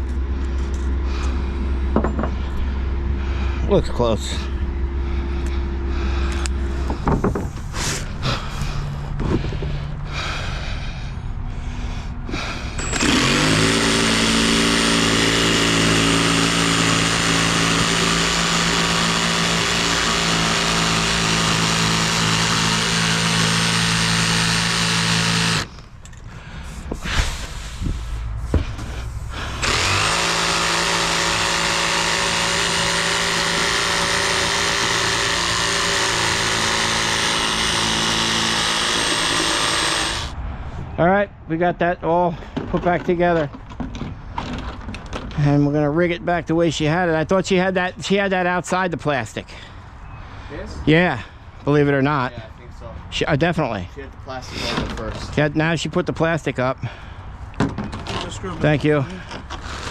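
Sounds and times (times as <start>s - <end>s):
power tool whining: 12.3s - 26.2s, 29.3s - 40.4s, 59.2s - 59.9s.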